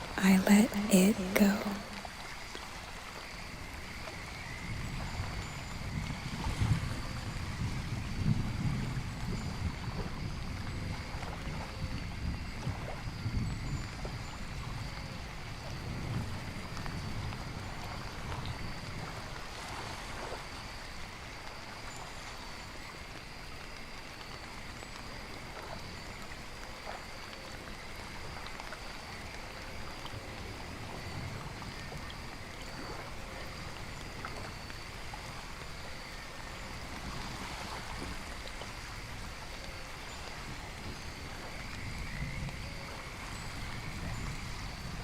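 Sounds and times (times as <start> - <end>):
faint high-pitched tones: 0.0 - 2.2
falling rain and water: 0.0 - 45.0.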